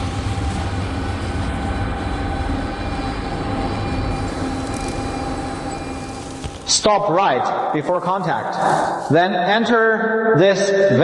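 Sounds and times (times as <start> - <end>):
machine low hum: 0.0 - 6.9
faint machine whine: 0.0 - 9.2.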